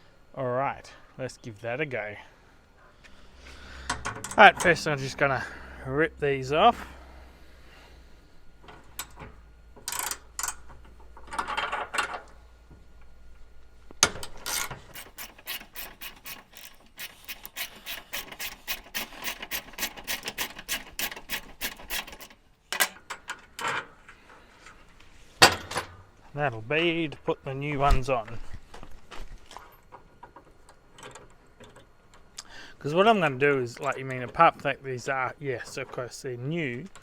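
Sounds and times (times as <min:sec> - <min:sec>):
hand tool strokes on metal: 0:14.5 - 0:22.4.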